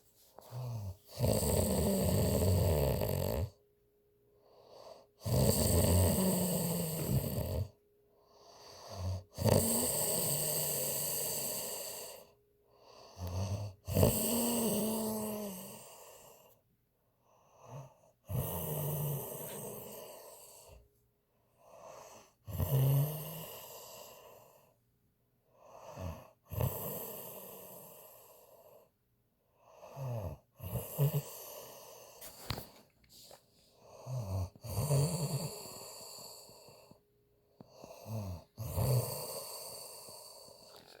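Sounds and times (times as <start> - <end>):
woman snoring: 0.4 - 3.6, 5.2 - 7.8, 8.5 - 12.4, 13.2 - 16.5, 17.6 - 20.8, 21.7 - 24.5, 25.6 - 28.6, 29.7 - 32.6, 33.9 - 37.0, 37.6 - 41.0.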